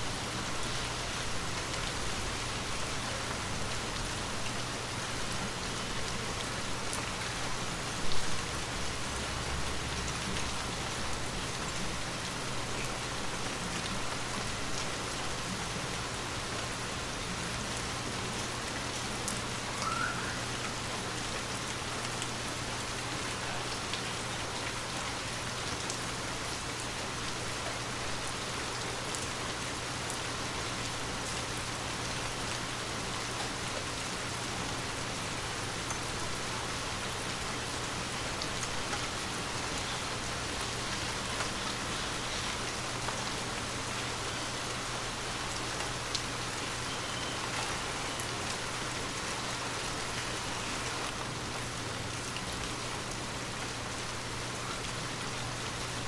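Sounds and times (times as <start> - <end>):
rain falling on a window: 0.0 - 56.0.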